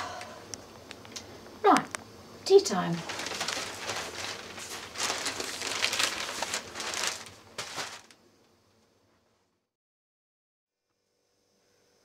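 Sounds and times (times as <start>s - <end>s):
crinkling and rustling: 2.6s - 9.4s.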